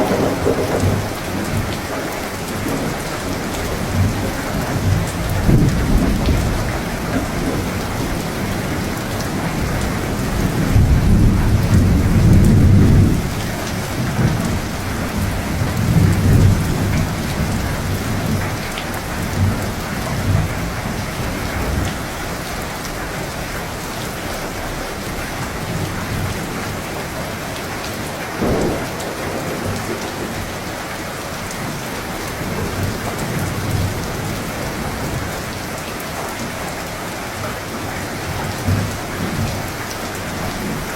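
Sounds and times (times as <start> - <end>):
thunder crack: 0.0 - 1.9, 28.4 - 30.8
rolling thunder: 0.0 - 23.5, 28.3 - 35.3
heavy rain: 0.0 - 40.9.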